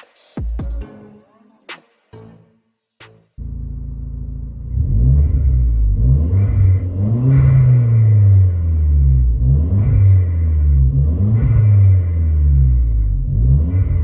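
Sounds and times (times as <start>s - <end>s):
car engine idling and revving: 3.4s - 14.0s.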